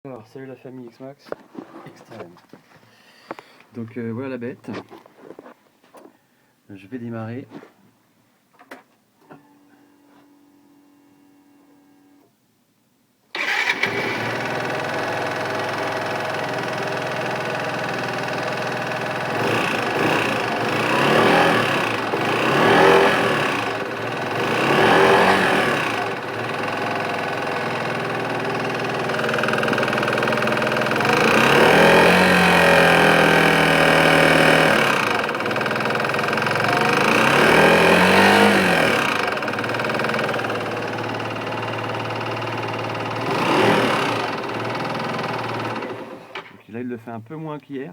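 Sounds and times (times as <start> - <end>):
scooter engine starting and idling: 13.3 - 46.7
scooter engine revving: 13.4 - 46.6.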